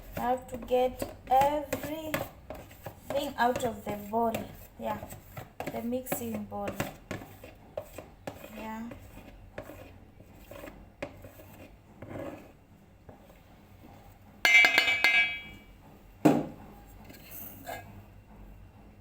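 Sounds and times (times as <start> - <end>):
metal spoon scraping a bowl: 0.0 - 12.6, 16.9 - 18.0
loud ringing metal clang: 14.5 - 15.6.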